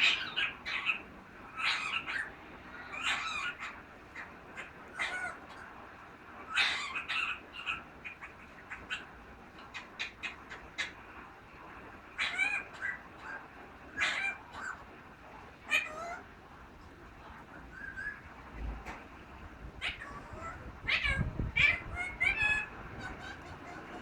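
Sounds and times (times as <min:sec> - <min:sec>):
parrot calling: 0:00.0 - 0:05.7, 0:06.4 - 0:11.0, 0:12.1 - 0:14.9, 0:15.6 - 0:16.3, 0:17.3 - 0:18.3, 0:19.8 - 0:24.0.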